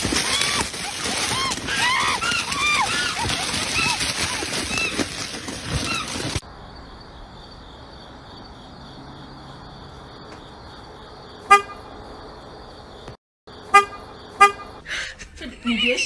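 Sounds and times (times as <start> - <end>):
short honks: 11.5 - 11.9, 13.7 - 14.8.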